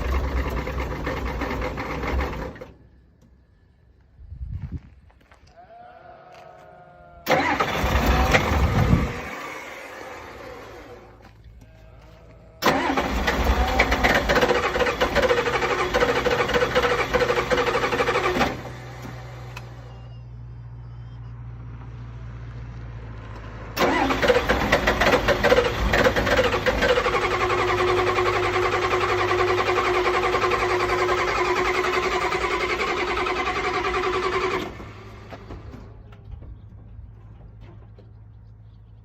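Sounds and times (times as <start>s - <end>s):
engine cranking on starter: 0.0s - 3.3s, 7.2s - 11.3s, 12.6s - 19.9s, 23.4s - 36.0s.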